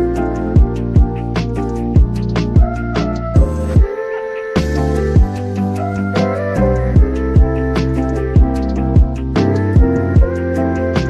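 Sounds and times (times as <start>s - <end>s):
kick drum beat: 0.6s - 1.3s, 2.0s - 2.8s, 5.2s - 5.4s, 7.0s - 7.6s, 8.4s - 10.4s.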